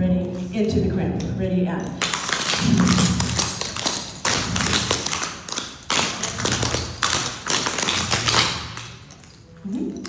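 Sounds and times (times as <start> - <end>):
tap shoes tapping on floor: 1.8 - 9.0.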